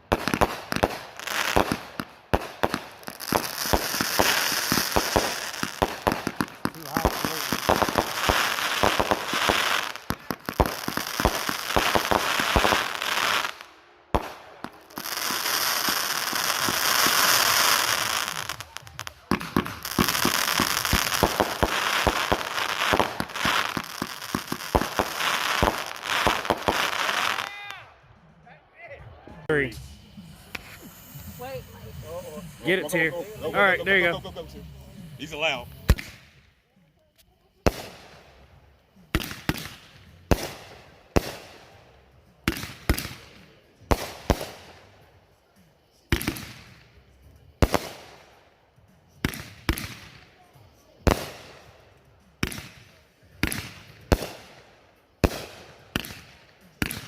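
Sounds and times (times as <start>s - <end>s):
firework bangs: 0.0s - 27.8s, 29.5s - 34.2s, 34.9s - 36.4s, 39.1s - 41.8s, 52.4s - 57.0s
firework crackling: 0.0s - 27.9s, 29.4s - 36.6s, 37.2s - 57.0s.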